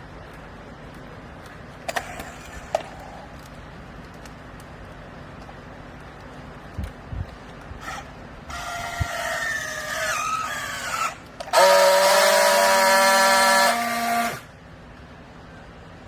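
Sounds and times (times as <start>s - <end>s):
loud steady machine whine: 7.8s - 16.0s.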